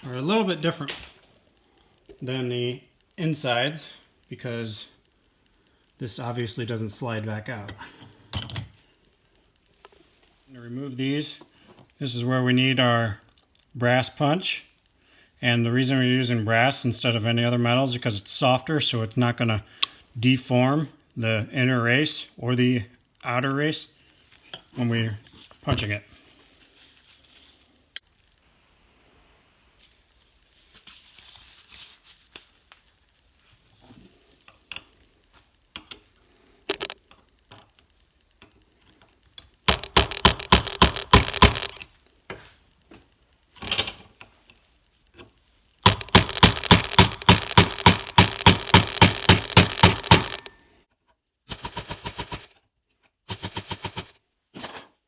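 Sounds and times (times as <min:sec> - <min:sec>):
hammer striking metal punch: 0:45.9 - 0:50.5.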